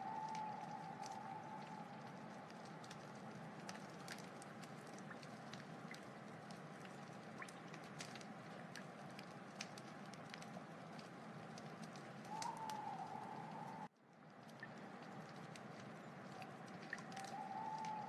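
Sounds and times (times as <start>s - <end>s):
fire crackles and pops: 0.0s - 18.0s.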